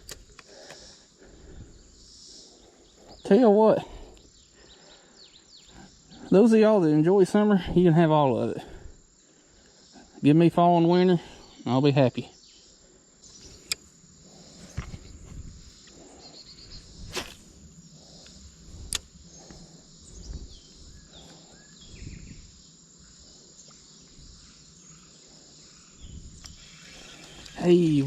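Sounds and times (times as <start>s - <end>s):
sharp clicks of handling gear: 0.0s - 0.9s
high buzzing of insects: 0.0s - 28.0s.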